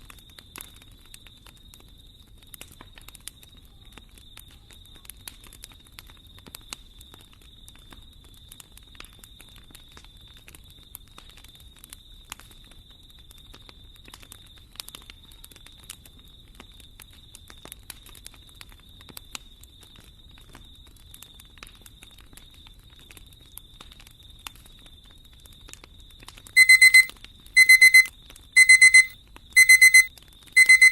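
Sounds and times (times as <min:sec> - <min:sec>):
fireplace fire crackling: 0:15.6 - 0:26.6
electronic alarm beeping: 0:26.6 - 0:30.9
faint steady high tone: 0:26.6 - 0:30.9.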